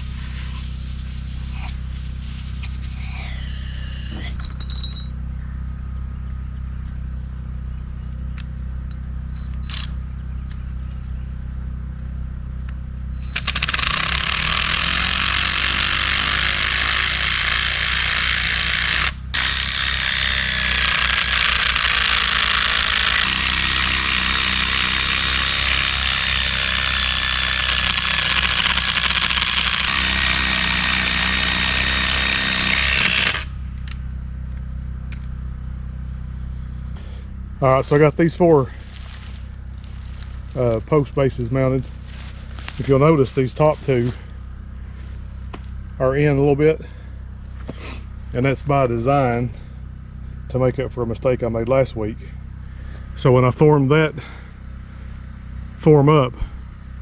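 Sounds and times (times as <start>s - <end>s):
power tool running: 0.0s - 4.4s, 13.2s - 34.0s, 36.9s - 46.0s
steady low hum: 0.0s - 57.0s.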